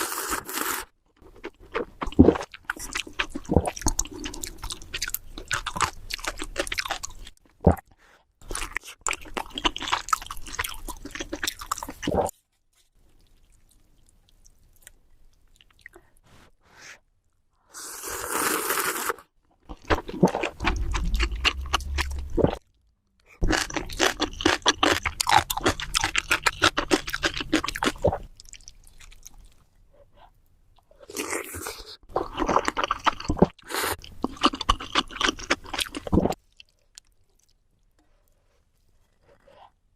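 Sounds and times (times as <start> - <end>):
crunchy food chewing: 8.4 - 12.4, 18.2 - 22.6, 23.3 - 29.7, 31.0 - 39.9.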